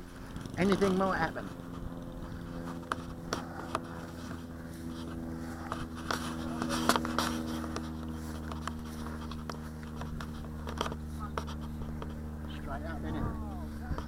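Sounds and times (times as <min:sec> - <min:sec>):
electric ducted fans humming: 0:00.0 - 0:14.0.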